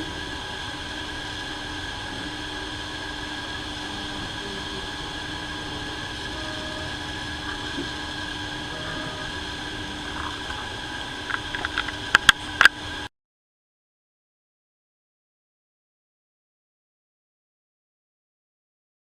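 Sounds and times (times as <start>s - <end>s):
three d printers whirring: 0.0s - 13.1s.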